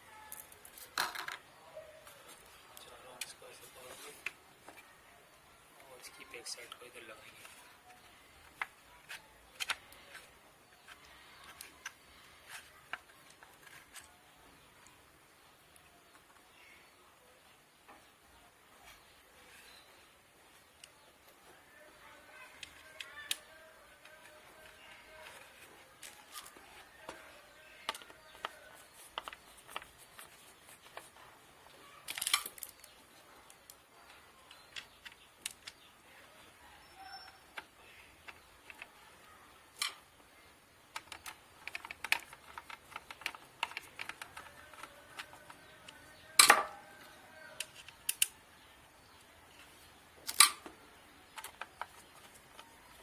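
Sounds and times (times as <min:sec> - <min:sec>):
hard drive and screws clicking: 0:40.9 - 0:48.4.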